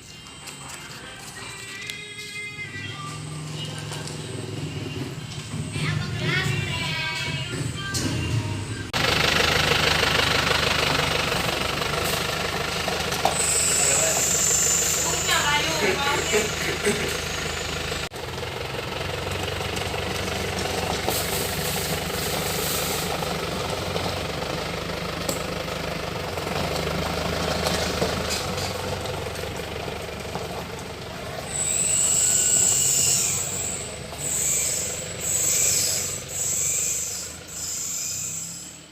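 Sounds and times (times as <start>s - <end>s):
vehicle engine droning: 0.0s - 38.9s
high-pitched buzz: 13.3s - 18.1s, 31.5s - 38.9s.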